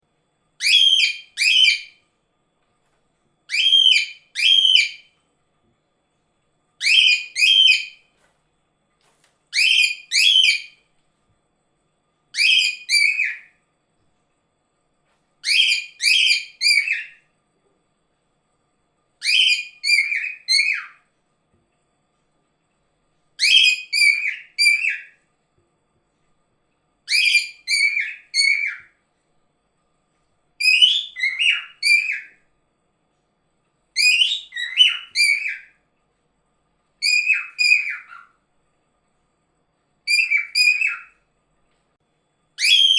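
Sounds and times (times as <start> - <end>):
cockatiel whistled calls: 0.6 - 2.0, 3.5 - 5.1, 6.8 - 8.0, 9.5 - 10.8, 12.3 - 13.5, 15.4 - 17.2, 19.2 - 21.0, 23.4 - 25.2, 27.1 - 29.0, 30.6 - 32.4, 34.0 - 35.8, 37.0 - 38.4, 40.1 - 41.2, 42.6 - 42.9.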